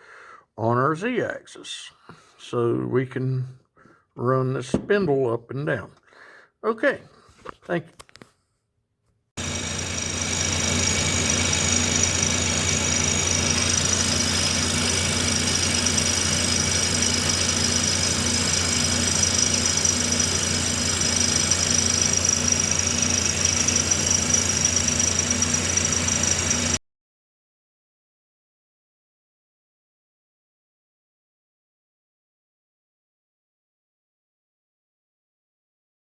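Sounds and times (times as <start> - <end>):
milling machine running: 9.4 - 26.8.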